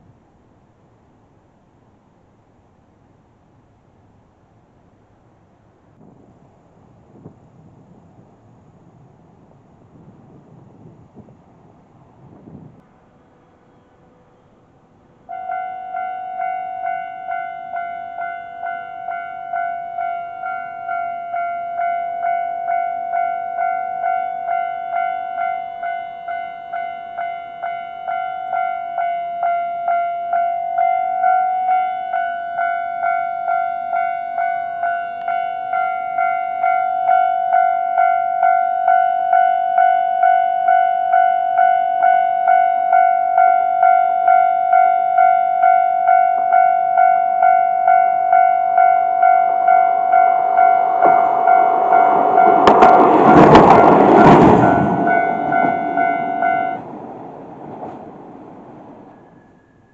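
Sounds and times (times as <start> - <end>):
train rumble and wheel clatter: 0.0 - 59.9
level crossing warning bell: 15.3 - 57.0.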